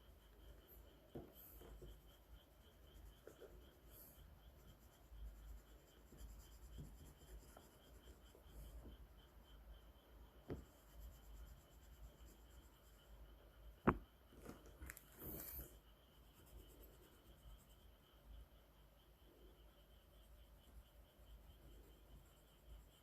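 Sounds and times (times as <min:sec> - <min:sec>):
drawing tool scratching on paper: 0:00.4 - 0:08.9.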